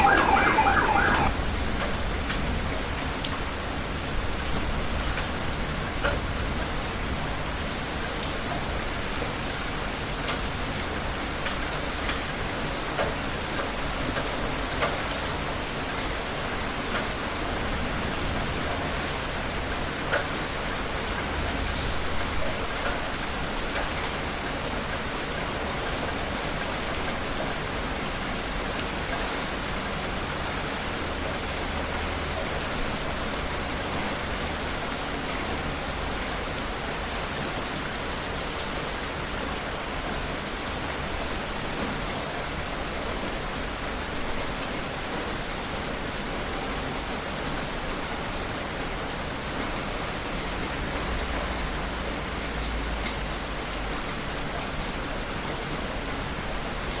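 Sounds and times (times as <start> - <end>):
sharp raindrop impacts: 0.0 - 1.5
heavy rain falling: 0.0 - 14.7, 15.4 - 57.0.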